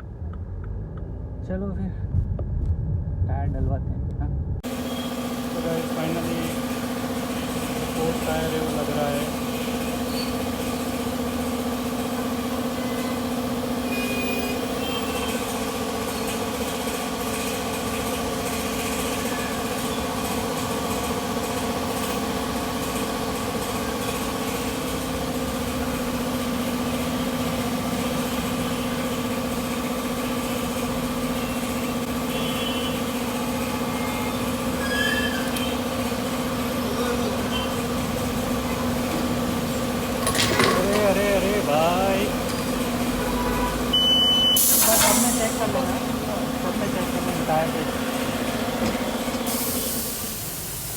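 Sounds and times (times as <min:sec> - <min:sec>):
machine hum: 0:00.0 - 0:34.9, 0:35.5 - 0:44.4.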